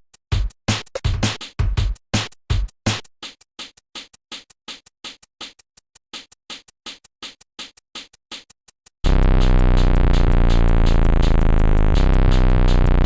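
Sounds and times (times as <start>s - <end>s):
electronic music with stuttering beat: 9.1s - 13.0s
heavy bass hits: 9.1s - 13.0s.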